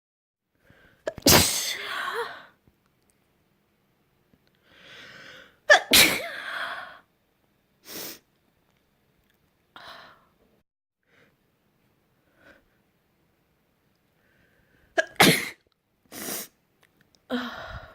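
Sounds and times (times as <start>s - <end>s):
person sneezing: 1.1s - 2.4s, 5.7s - 6.6s, 15.0s - 15.6s
sharp in-breath: 4.6s - 5.6s.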